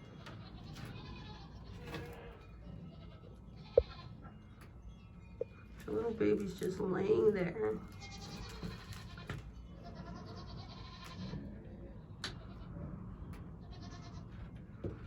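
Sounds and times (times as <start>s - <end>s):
quavering bleat-like animal calls: 0.1s - 4.3s, 7.9s - 11.7s, 13.6s - 14.5s.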